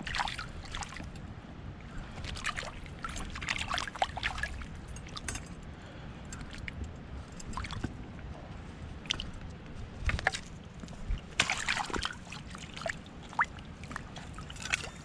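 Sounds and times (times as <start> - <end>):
water splashing and dripping: 0.0 - 1.2, 2.0 - 5.4, 11.2 - 14.9
low steady rumble: 0.0 - 15.0.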